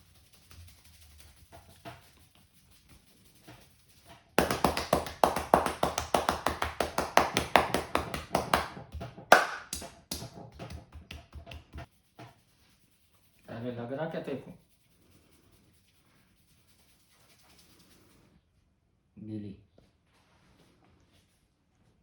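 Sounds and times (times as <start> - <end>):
hands slapping in massage: 4.1 - 11.9.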